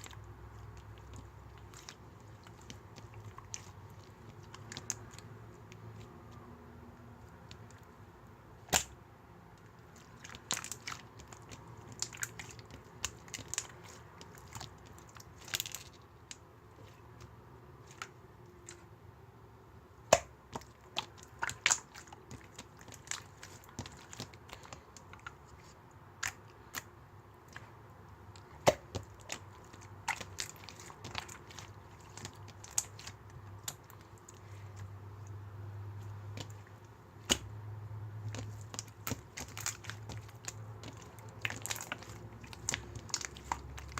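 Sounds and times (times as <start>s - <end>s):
slime clicking and popping by hand: 8.6s - 9.0s, 20.1s - 25.3s, 28.4s - 34.0s, 37.2s - 37.5s, 38.3s - 43.9s.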